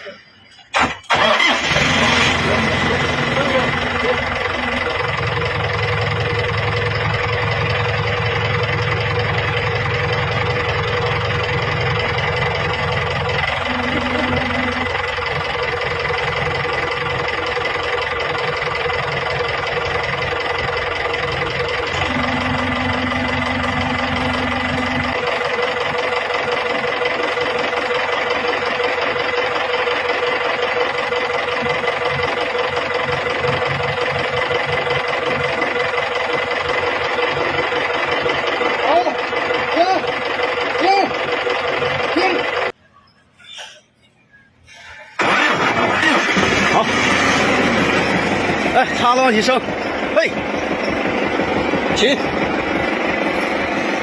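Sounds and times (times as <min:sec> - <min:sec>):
vehicle engine rumbling: 0:00.0 - 0:54.0
high whine: 0:13.3 - 0:15.8, 0:21.8 - 0:25.7.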